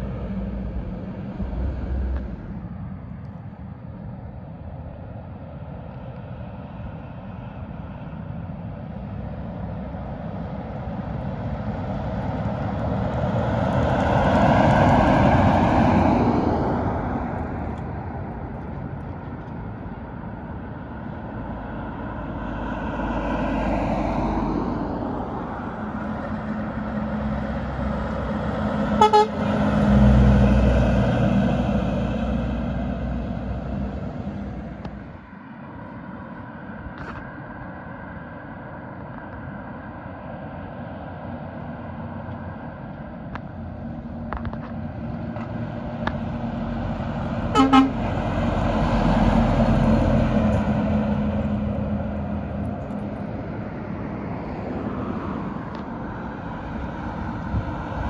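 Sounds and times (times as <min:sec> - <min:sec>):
deep engine rumble: 0:00.0 - 0:22.5
heavy trucks driving past: 0:00.0 - 0:58.0
truck horns: 0:28.8 - 0:29.7, 0:47.5 - 0:48.2.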